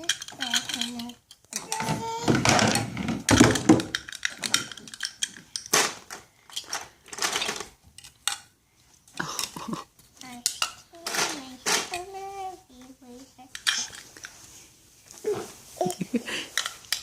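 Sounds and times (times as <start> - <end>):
plastic toy pieces clattering: 0.0 - 8.5, 10.2 - 12.2, 13.5 - 14.4, 16.5 - 17.0.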